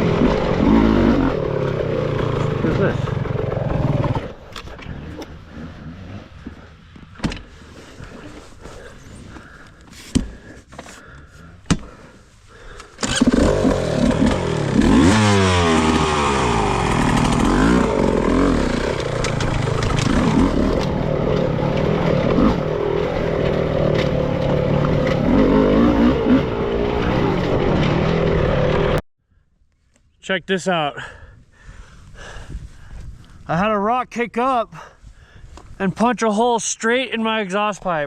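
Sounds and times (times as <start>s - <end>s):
dirt bike engine revving: 0.0s - 4.4s, 13.0s - 29.0s.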